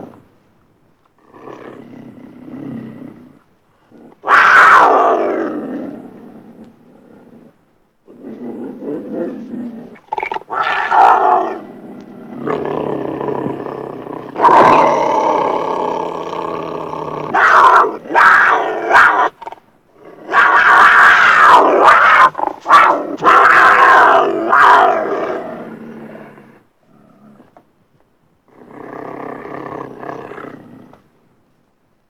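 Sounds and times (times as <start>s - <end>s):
beast roaring: 4.2s - 6.0s, 8.1s - 26.1s
beast growling: 8.1s - 27.4s.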